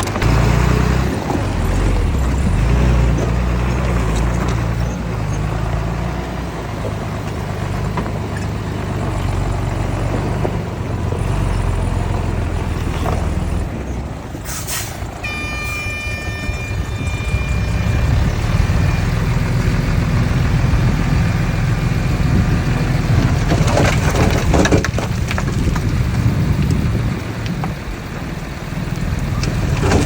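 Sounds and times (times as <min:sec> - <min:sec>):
diesel engines rumbling: 0:00.0 - 0:30.0
short air hiss: 0:14.4 - 0:15.1
high-pitched whine: 0:15.2 - 0:20.5.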